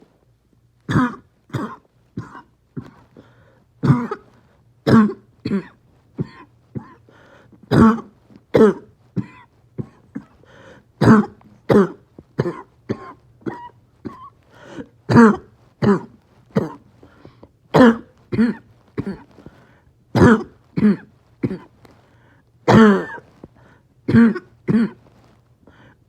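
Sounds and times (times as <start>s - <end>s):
person coughing harshly: 0.9s - 3.1s, 3.8s - 7.1s, 7.7s - 16.9s, 17.7s - 19.5s, 20.2s - 21.7s, 22.7s - 23.4s, 24.1s - 25.1s
breathy gasps: 2.8s - 3.6s, 7.1s - 7.6s, 10.2s - 10.9s, 14.5s - 15.0s, 21.9s - 22.4s, 23.4s - 23.9s, 25.2s - 26.0s.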